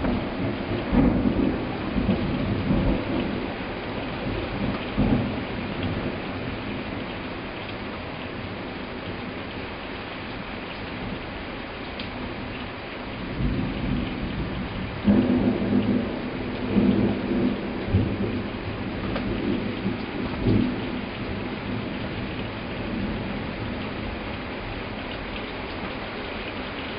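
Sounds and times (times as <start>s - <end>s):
thunder rumbling: 0.0s - 8.5s, 13.2s - 26.0s
heavy rain hissing: 0.0s - 26.9s.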